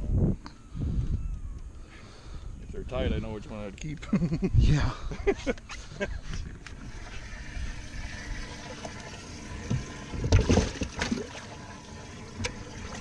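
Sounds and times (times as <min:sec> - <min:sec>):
water sloshing: 0:06.2 - 0:13.0
water splashing: 0:06.4 - 0:13.0.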